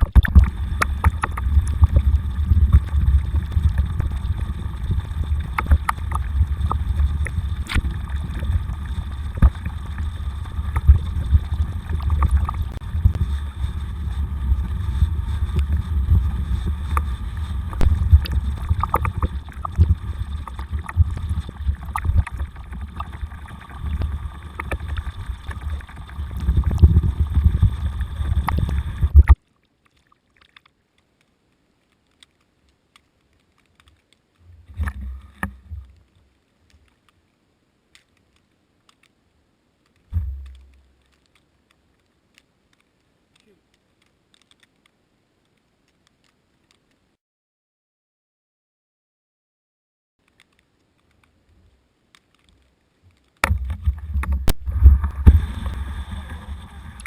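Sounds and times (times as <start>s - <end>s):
wind and tyre rumble: 0.0s - 29.4s, 53.5s - 57.0s.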